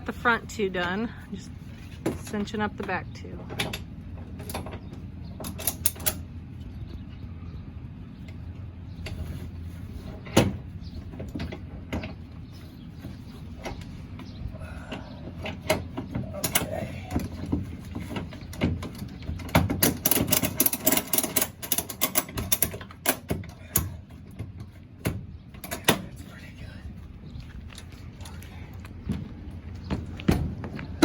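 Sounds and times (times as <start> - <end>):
ratchet strap clicking: 19.8 - 23.2.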